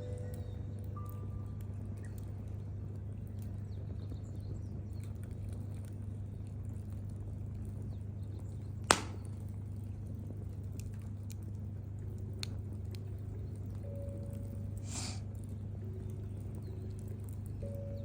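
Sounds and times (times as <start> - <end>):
campfire crackling: 0.0 - 18.0
loud pops from fire: 8.3 - 11.4.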